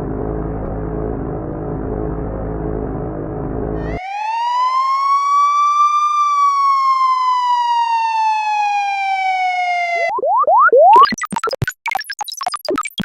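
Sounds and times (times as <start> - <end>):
low rumble: 0.0 - 4.0
siren wail: 3.8 - 11.0.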